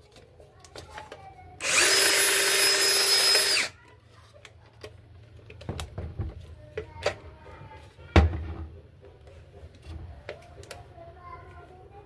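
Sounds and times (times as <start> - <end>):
electric drill whine: 1.6 - 3.7.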